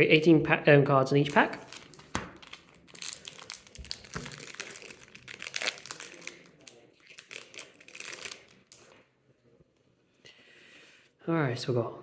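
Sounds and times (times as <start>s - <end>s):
foil wrapper crinkling and tearing: 1.2s - 8.9s.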